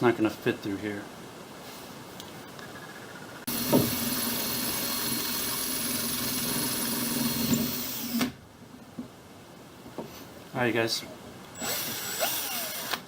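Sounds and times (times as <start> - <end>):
electric drill boring through brass: 3.5 - 8.2, 11.6 - 13.0.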